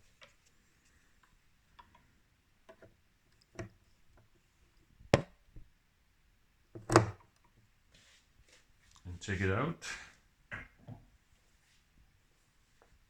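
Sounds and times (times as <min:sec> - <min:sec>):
microphone cable clicks and knocks: 0:05.0 - 0:05.7, 0:06.8 - 0:07.5.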